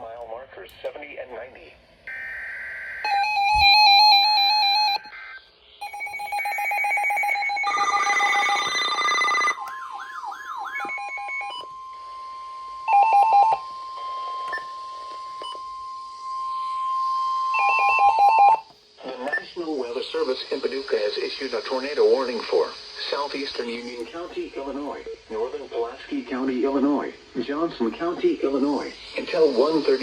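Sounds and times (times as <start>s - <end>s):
steady high alert tone: 2.1s - 22.4s
buzzy digital data bursts: 19.4s - 24.6s, 25.7s - 30.0s.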